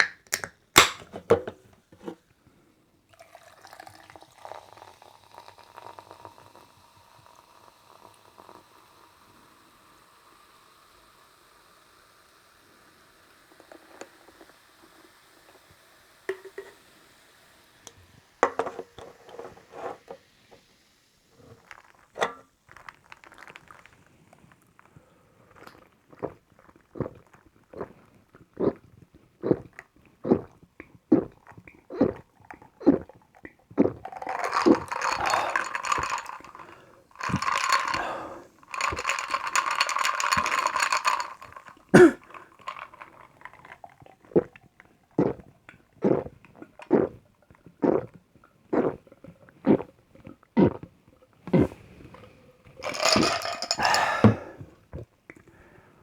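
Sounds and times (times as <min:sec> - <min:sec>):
person gulping a drink: 0:03.1 - 0:06.4, 0:21.5 - 0:24.1, 0:24.8 - 0:55.6.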